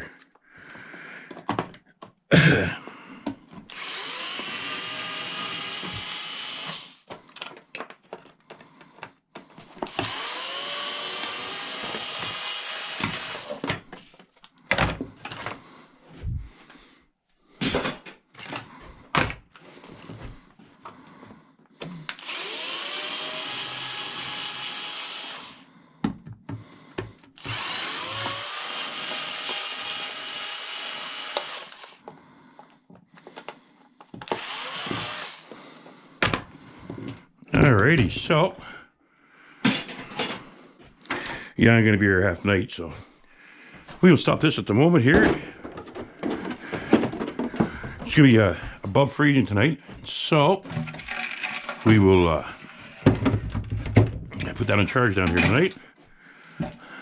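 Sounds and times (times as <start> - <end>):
cordless power drill whining: 3.6 - 7.5, 9.6 - 13.9, 21.8 - 25.7, 27.2 - 32.2, 33.2 - 37.1, 50.7 - 53.8.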